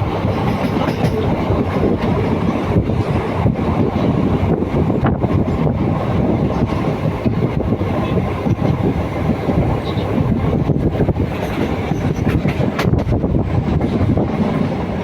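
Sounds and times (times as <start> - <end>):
wheels clattering over rails: 0.0 - 3.6, 9.7 - 15.0
train rumbling: 0.0 - 15.0.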